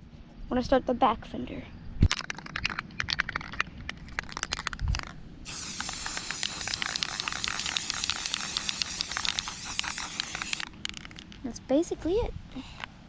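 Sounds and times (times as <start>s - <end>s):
spray can hissing: 5.5s - 11.1s.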